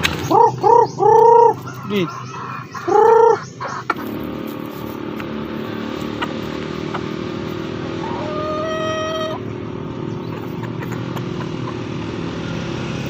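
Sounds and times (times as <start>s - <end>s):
engine hum: 0.0s - 13.0s
rooster crowing: 8.0s - 9.4s.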